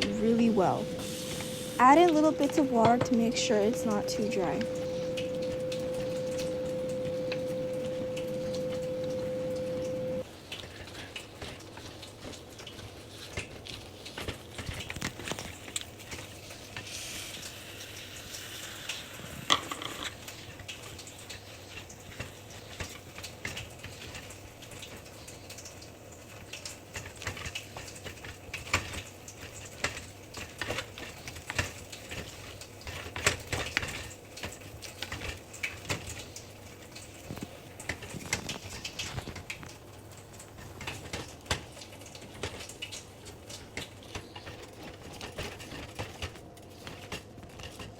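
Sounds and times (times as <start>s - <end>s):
steady tone: 0.0s - 10.2s.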